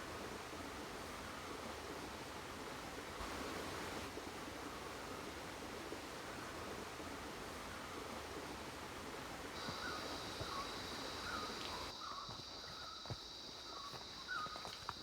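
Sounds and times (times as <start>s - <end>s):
background hiss: 0.0s - 15.0s
short insect chirps: 9.6s - 15.0s.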